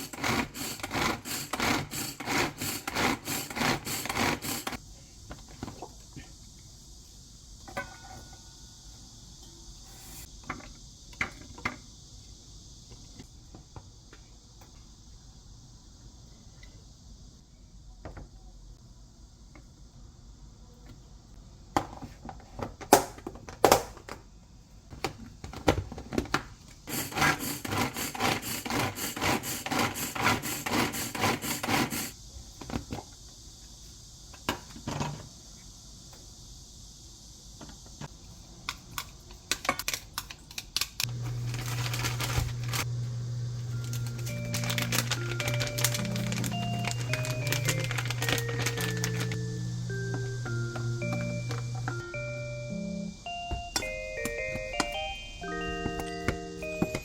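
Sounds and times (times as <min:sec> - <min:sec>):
background music: 0:43.8 - 0:57.0.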